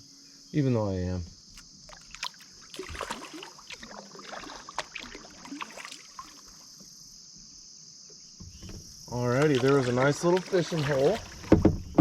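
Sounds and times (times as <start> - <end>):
insects chirring: 0.0 - 12.0
kayak paddle splashing in water: 1.5 - 6.8, 9.1 - 12.0
water drips and small knocks: 1.6 - 6.9, 8.4 - 12.0.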